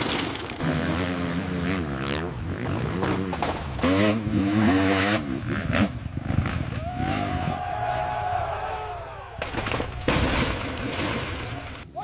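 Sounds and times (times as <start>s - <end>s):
dirt bike engine revving: 0.6s - 8.0s.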